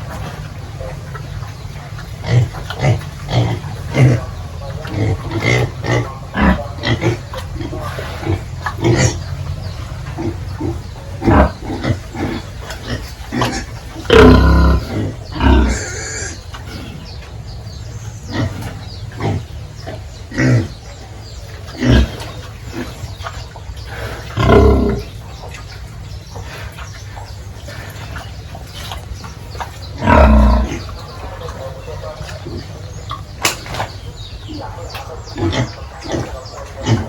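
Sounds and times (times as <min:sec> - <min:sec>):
pigs grunting: 0:00.0 - 0:37.0.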